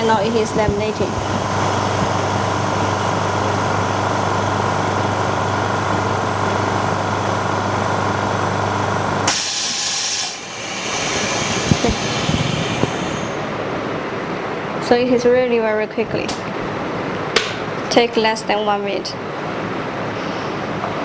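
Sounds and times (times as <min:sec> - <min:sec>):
vacuum pump humming: 0:00.0 - 0:14.9
loud air hiss: 0:09.2 - 0:14.1.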